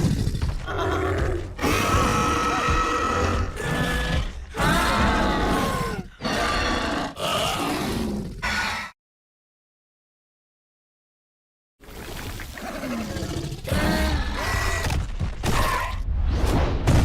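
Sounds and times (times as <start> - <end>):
creature growling roars: 0.0 - 9.0, 12.5 - 14.9.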